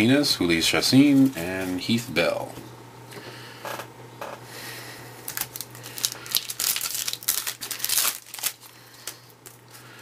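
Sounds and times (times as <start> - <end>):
wrapper crinkling and tearing: 5.2 - 9.8.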